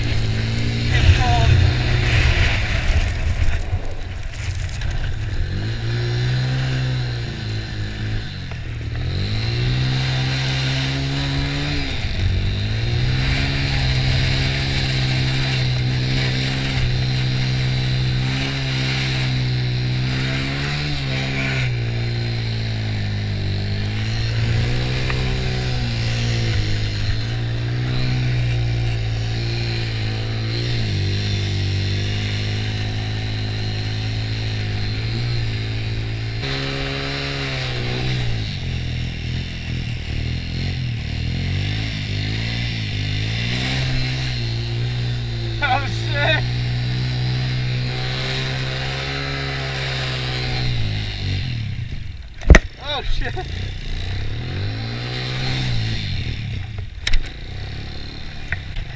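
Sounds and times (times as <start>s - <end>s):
small engine running: 0.0s - 58.9s.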